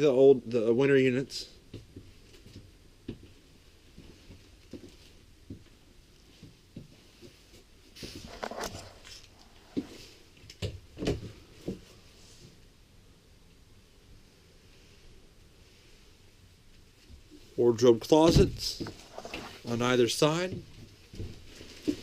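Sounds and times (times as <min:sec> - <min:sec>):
footsteps inside trailer: 0:01.4 - 0:12.8, 0:15.6 - 0:22.0.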